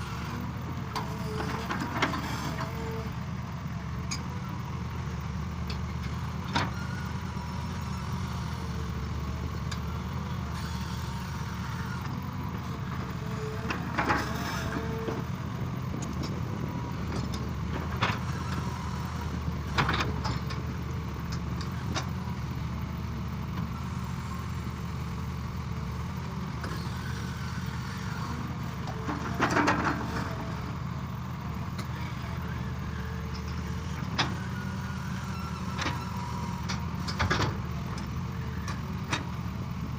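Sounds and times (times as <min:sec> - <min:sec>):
excavator engine droning: 0:00.0 - 0:39.9.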